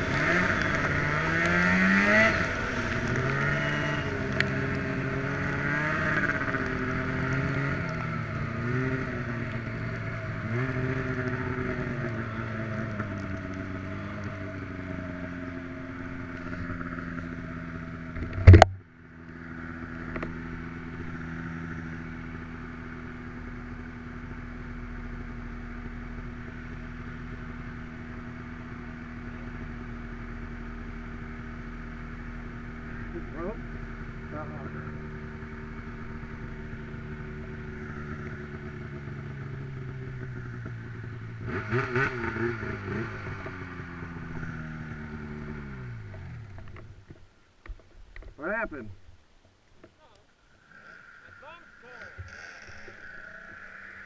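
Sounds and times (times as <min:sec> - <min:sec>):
snowmobile engine running: 0:00.0 - 0:47.1, 0:50.0 - 0:54.0
loud thump: 0:18.2 - 0:18.8.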